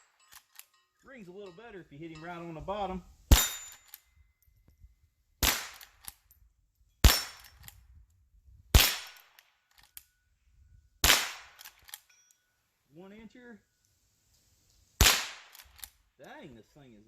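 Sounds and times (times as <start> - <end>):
rifle shots with echo: 5.4 - 5.9, 8.8 - 9.3, 11.0 - 11.6, 15.0 - 15.8.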